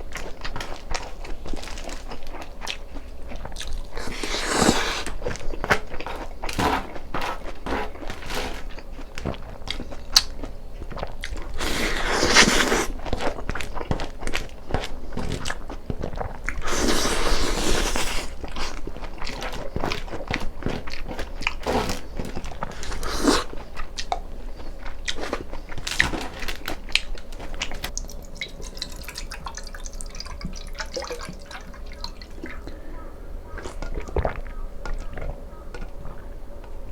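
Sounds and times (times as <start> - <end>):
wet chewing: 0.0 - 36.9
slurping: 3.4 - 10.3, 11.0 - 13.7, 15.3 - 32.9.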